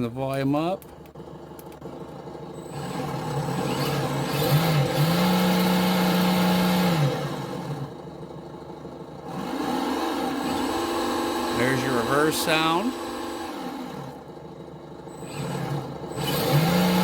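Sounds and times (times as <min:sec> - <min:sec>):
simulated engine revving: 0:02.6 - 0:08.1, 0:09.2 - 0:14.4, 0:15.1 - 0:17.0.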